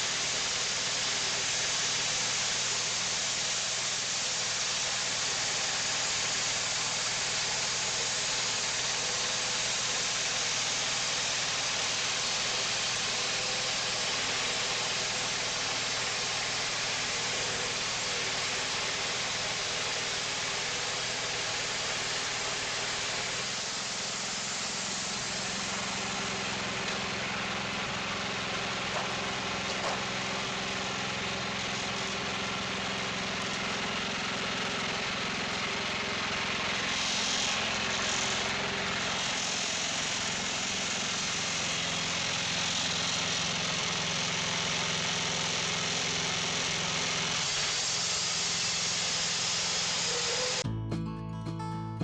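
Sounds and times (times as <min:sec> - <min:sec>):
sawmill engine humming: 0:00.0 - 0:50.6
guitar music: 0:50.6 - 0:52.0.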